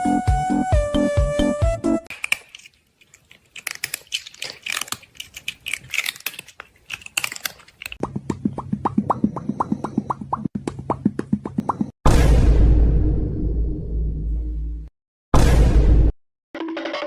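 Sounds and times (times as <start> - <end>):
beat of repeated plops: 8.0 - 11.9.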